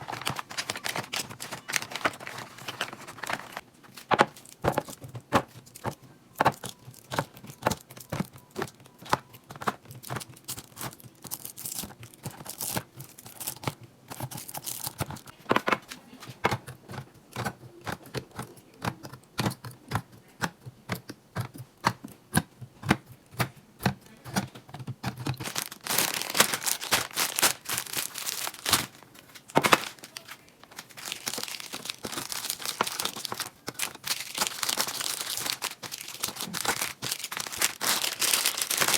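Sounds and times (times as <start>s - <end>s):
plastic packaging crinkling: 0.0s - 15.4s, 25.0s - 38.9s.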